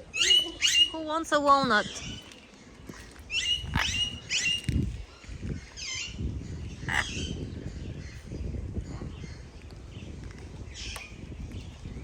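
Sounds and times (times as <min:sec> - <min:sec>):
birds calling: 0:00.0 - 0:12.0.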